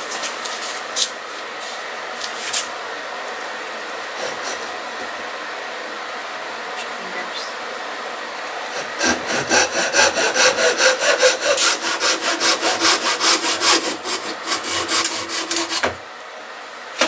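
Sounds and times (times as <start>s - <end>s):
hand saw cutting wood: 4.1s - 5.1s, 8.7s - 16.0s.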